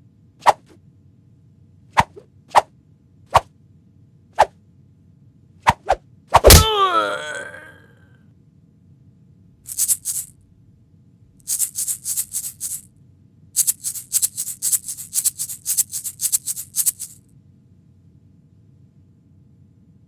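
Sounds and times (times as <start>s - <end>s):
shaker rattling: 9.6s - 10.4s, 11.4s - 12.9s, 13.6s - 17.3s.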